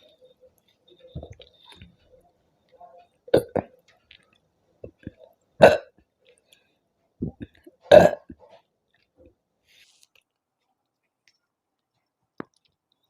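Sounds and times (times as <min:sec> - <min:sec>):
person burping: 0:03.3 - 0:03.7, 0:05.6 - 0:05.9, 0:07.2 - 0:08.4.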